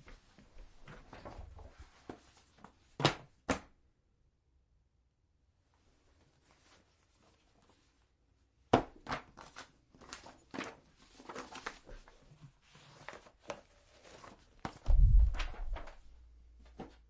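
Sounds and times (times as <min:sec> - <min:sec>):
paper rustling and flipping: 0:00.1 - 0:02.8, 0:09.0 - 0:17.0
heavy low thump: 0:14.9 - 0:15.8.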